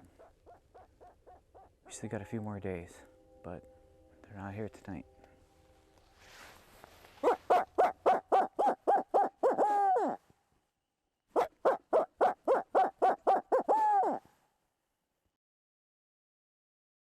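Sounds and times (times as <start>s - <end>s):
owl hooting: 0.0s - 1.9s, 7.1s - 10.2s, 11.3s - 14.3s.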